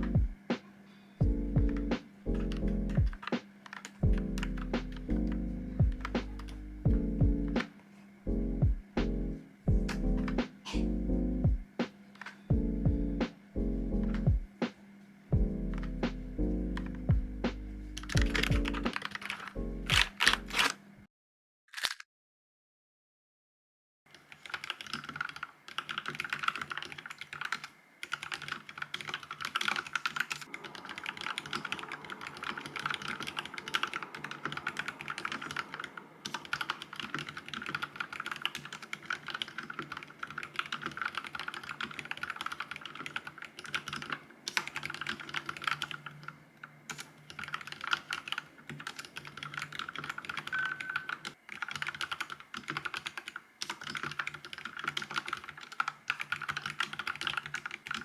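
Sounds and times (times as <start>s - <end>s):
fast mechanical keyboard typing: 1.6s - 6.6s, 18.0s - 20.7s, 24.1s - 58.0s.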